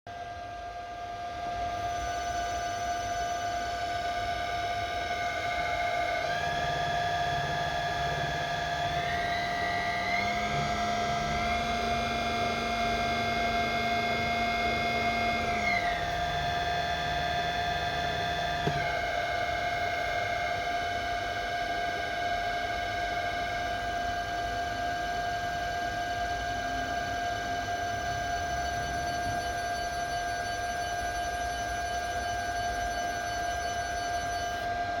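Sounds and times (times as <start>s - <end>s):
electric motor whine: 0.1s - 35.0s.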